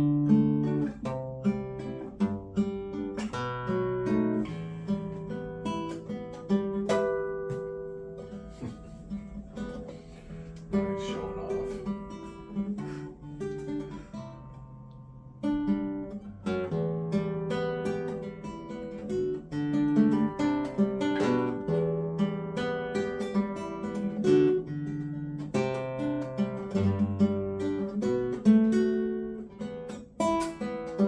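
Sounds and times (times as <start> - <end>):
guitar picked notes: 0.0 - 31.0.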